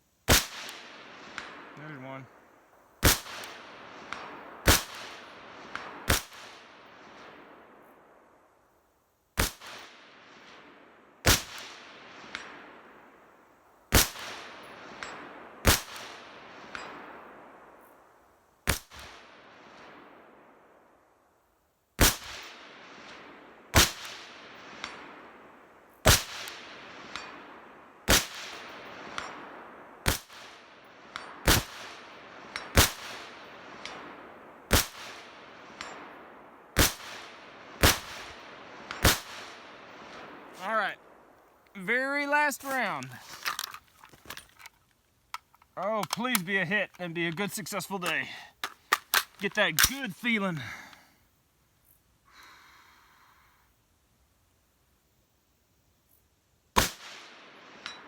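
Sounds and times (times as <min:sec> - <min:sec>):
rifle shots with rolling echo: 0:00.3 - 0:08.6, 0:09.4 - 0:21.2, 0:22.0 - 0:41.4, 0:56.8 - 0:58.0.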